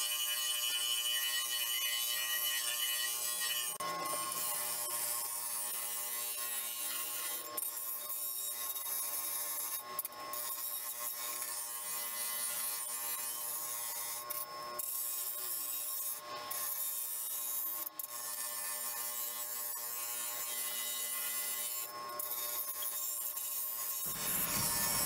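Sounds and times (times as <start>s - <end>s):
abrasive rubbing rusty sheet metal: 24.1s - 25.0s.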